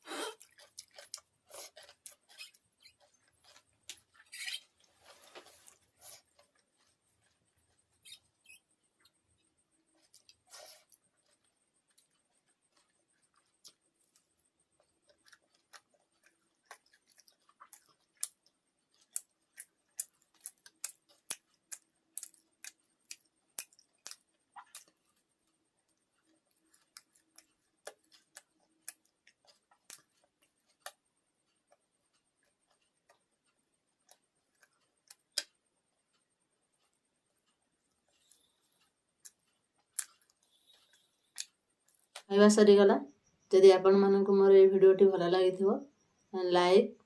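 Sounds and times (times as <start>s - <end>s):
mouth clicks and chewing smacks: 10.0s - 42.3s.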